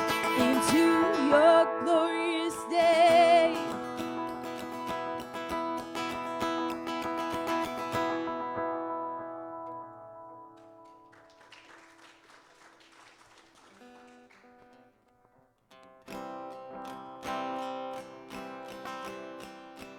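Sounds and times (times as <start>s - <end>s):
acoustic guitar strumming chords: 0.0s - 11.0s, 15.2s - 19.9s.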